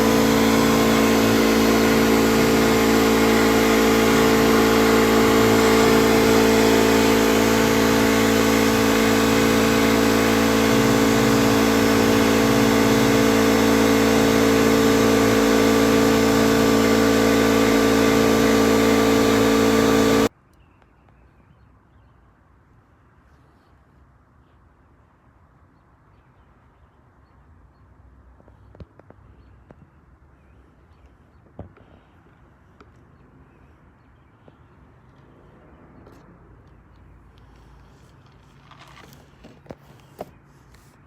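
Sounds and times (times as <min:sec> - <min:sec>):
welding arc buzzing and hissing: 0:00.0 - 0:20.3.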